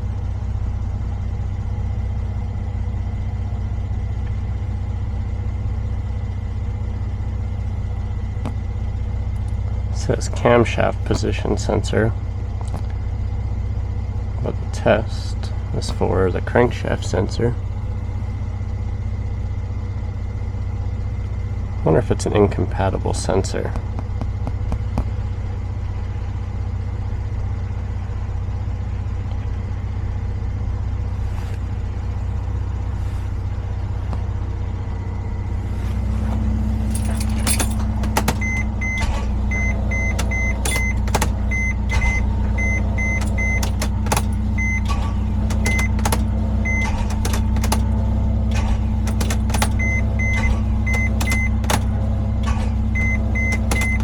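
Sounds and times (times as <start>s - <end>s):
car engine idling: 0.0s - 54.0s
sharp clicks and knocks: 35.9s - 54.0s
short electronic beep: 38.3s - 43.7s.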